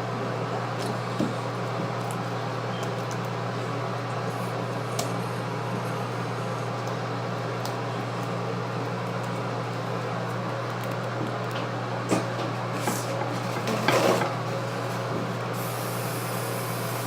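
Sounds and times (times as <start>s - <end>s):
machine hum with hiss: 12.0s - 17.0s.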